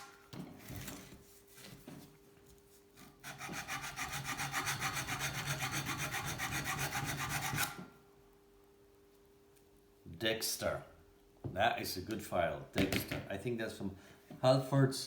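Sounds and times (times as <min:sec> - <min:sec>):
file rasping on metal: 0:03.2 - 0:07.9.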